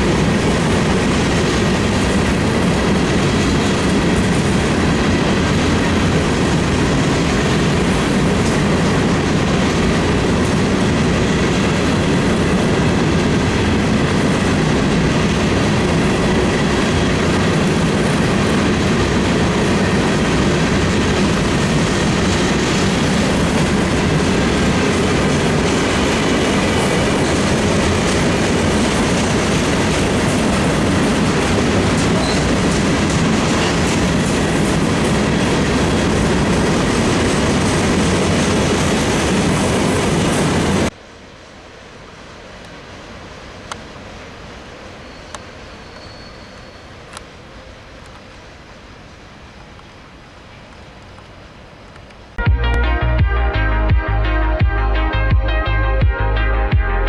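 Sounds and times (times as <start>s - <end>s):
freight train wheels clattering: 0.0s - 40.9s.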